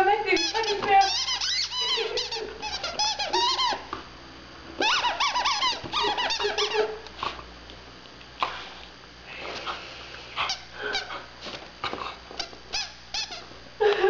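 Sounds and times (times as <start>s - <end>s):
rubber squeaky toy squeaking: 0.4s - 3.8s, 4.8s - 6.9s, 12.7s - 13.4s.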